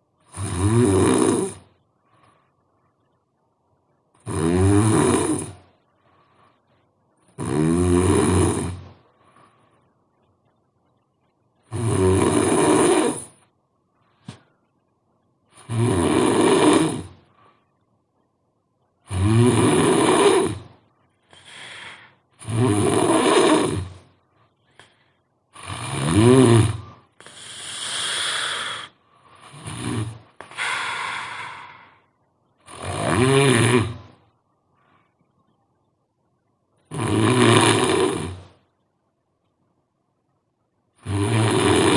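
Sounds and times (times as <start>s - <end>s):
person snoring loudly: 0.3s - 1.7s, 4.2s - 5.6s, 7.4s - 8.9s, 11.7s - 13.4s, 15.6s - 17.2s, 19.1s - 20.7s, 21.8s - 24.0s, 25.6s - 32.0s, 32.7s - 34.2s, 36.9s - 38.5s, 41.0s - 41.9s.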